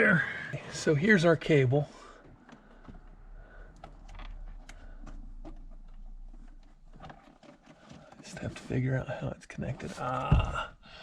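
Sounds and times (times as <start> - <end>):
small parts clicking and rustling: 2.3 - 8.7.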